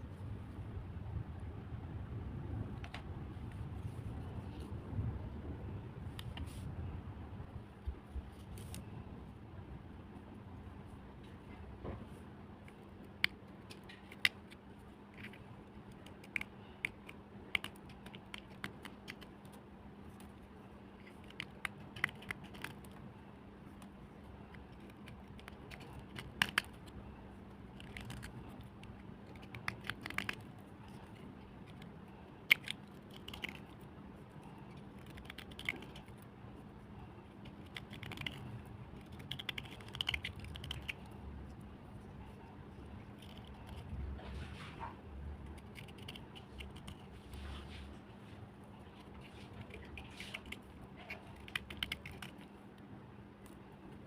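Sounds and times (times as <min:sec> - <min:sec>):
low hum: 0:00.0 - 0:54.0.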